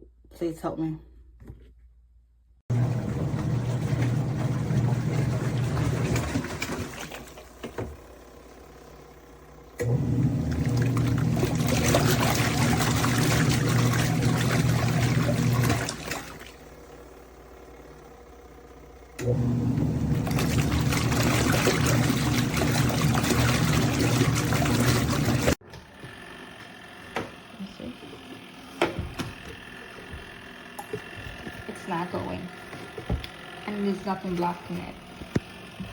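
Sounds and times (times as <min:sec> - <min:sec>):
water churning in tub: 0:02.7 - 0:07.7, 0:09.8 - 0:16.7, 0:19.2 - 0:25.6
washing machine motor hum: 0:02.7 - 0:35.9.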